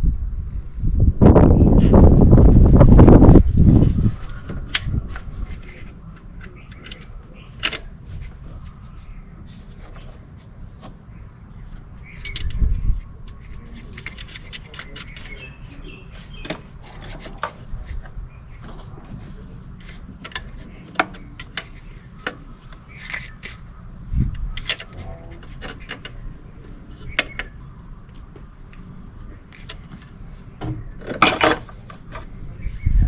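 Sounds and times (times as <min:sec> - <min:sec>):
metal clatter: 0:31.2 - 0:31.8
metal tools clinking and tapping: 0:31.2 - 0:31.8.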